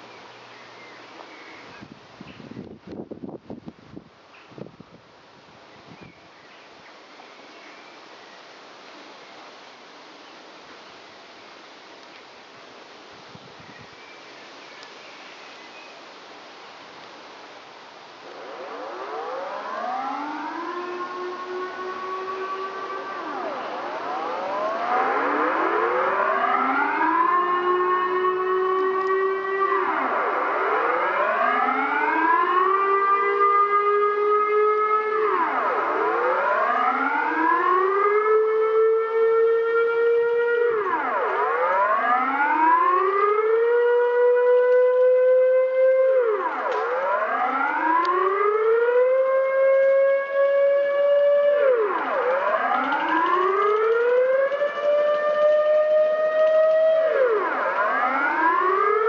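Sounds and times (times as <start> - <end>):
air raid siren wailing: 18.2 - 59.0.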